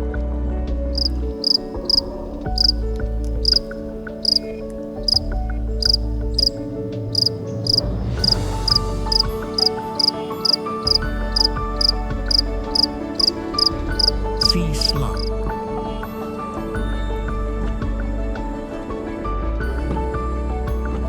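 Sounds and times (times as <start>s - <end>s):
background music with slow bass: 0.0s - 21.0s
high insect chirps: 1.0s - 15.3s.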